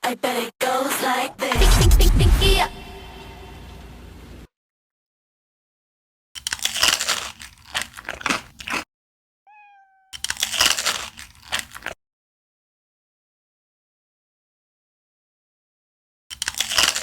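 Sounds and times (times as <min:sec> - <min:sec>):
crunching crisp food: 0:06.4 - 0:08.9, 0:10.2 - 0:12.0, 0:16.3 - 0:17.0.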